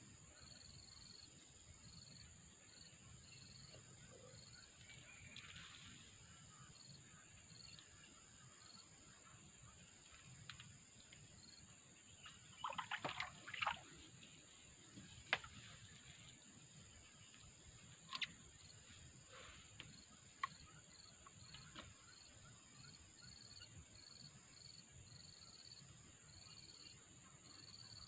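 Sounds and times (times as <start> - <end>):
cricket chirps: 0.0 - 28.0
high drone of insects: 0.0 - 28.0
small water splashes and knocks: 12.2 - 14.1, 14.9 - 15.7.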